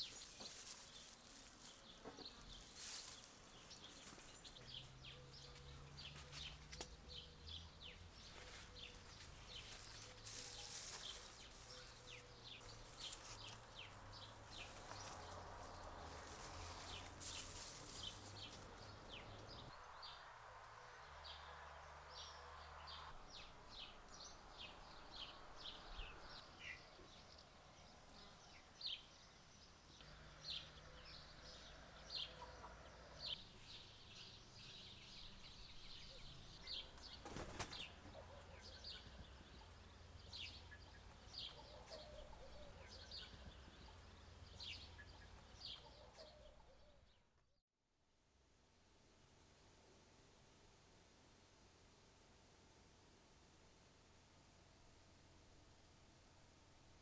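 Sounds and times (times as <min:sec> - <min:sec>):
small birds chirping: 0:00.0 - 0:20.1, 0:22.2 - 0:47.3.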